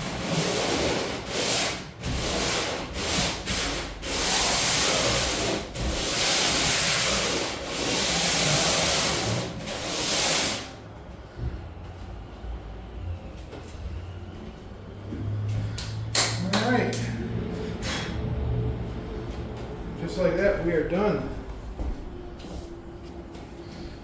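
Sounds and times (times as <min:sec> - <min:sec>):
sanding plywood: 0:00.0 - 0:10.8.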